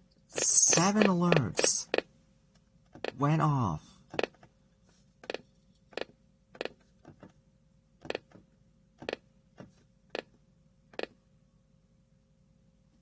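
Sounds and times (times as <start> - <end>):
faint steady hum: 0.0 - 13.0
computer mouse clicks: 5.2 - 7.3, 8.0 - 8.4, 10.9 - 11.2.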